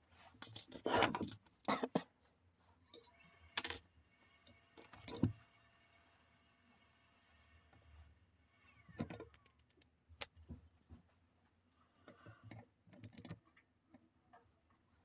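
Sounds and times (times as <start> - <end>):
small parts clicking and tapping: 0.4 - 1.7, 2.9 - 3.8, 9.0 - 10.6, 12.1 - 14.5.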